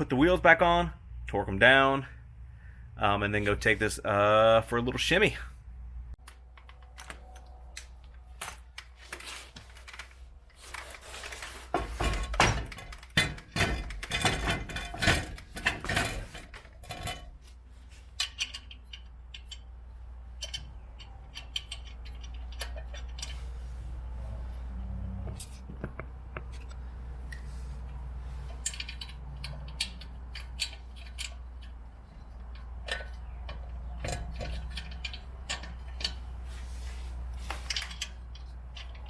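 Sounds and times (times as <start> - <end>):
metallic clanks and knocks: 11.7 - 17.4, 18.2 - 23.5, 28.5 - 36.3.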